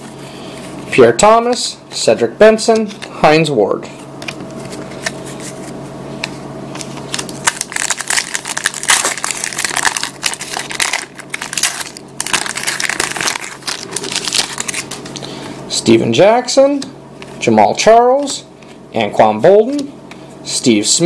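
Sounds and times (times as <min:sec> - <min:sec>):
foil wrapper tearing and crinkling: 0:07.0 - 0:15.2.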